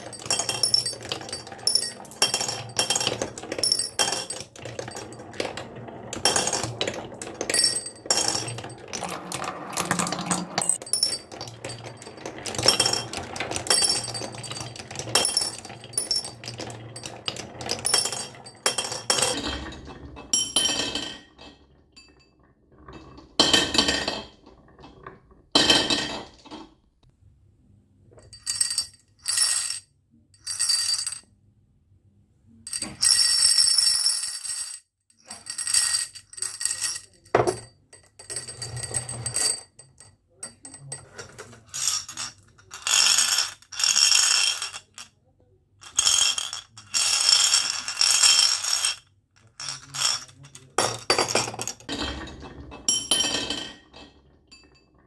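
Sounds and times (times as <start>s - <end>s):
marbles clattering through toy run: 0.0s - 19.4s, 32.7s - 37.6s, 40.8s - 45.1s, 45.8s - 51.9s.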